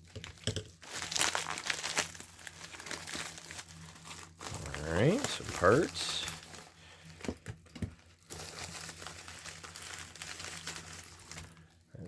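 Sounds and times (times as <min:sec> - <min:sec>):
packaging crinkling rustle: 0:00.0 - 0:11.9.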